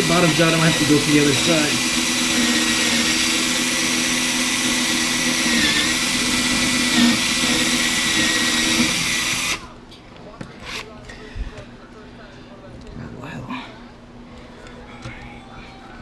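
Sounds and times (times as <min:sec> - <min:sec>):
power drill cutting wood: 0:00.0 - 0:09.6.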